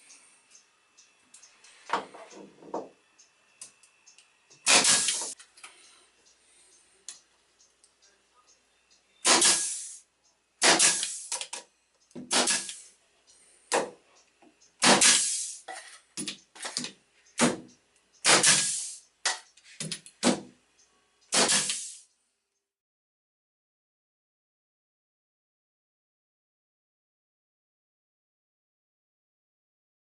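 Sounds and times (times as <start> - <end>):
nailing bangs: 4.6 - 5.3, 9.2 - 9.7, 10.6 - 11.2, 14.8 - 15.3, 17.4 - 18.7, 19.8 - 20.5, 21.3 - 21.8.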